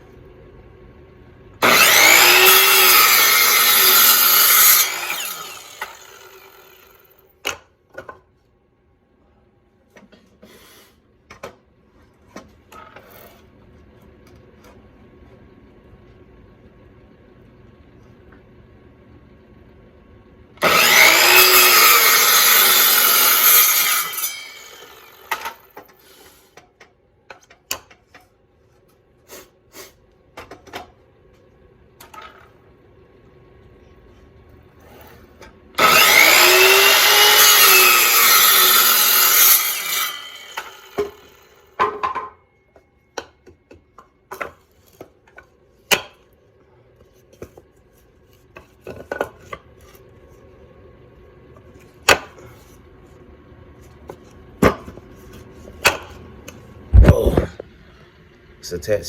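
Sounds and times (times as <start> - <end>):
power saw cutting wood: 1.6 - 7.2, 20.6 - 26.1, 35.8 - 41.8.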